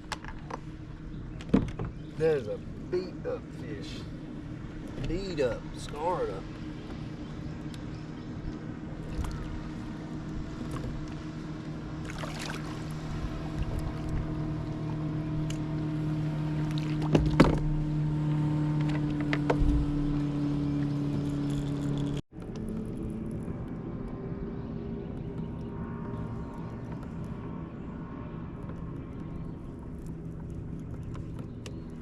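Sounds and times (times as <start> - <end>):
knocks on kayak: 17.0 - 17.8.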